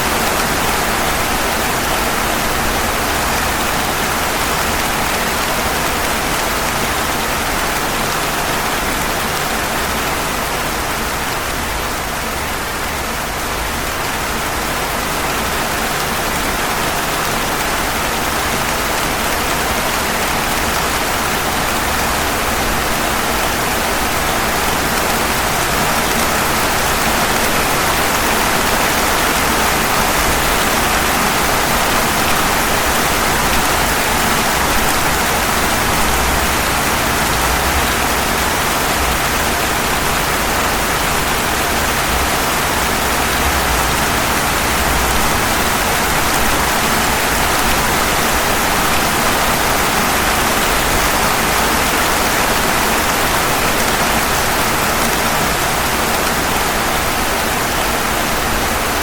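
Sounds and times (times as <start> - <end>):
rain on pavement: 0.0 - 59.0.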